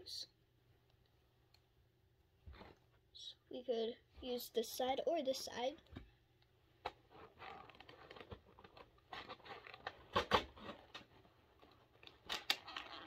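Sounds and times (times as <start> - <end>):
packaging rustling and crinkling: 7.4 - 13.0.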